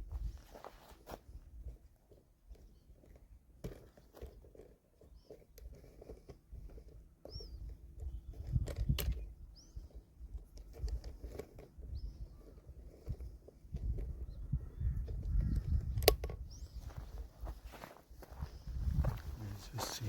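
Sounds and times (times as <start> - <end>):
footsteps on rough ground: 0.0 - 1.9, 12.2 - 20.0.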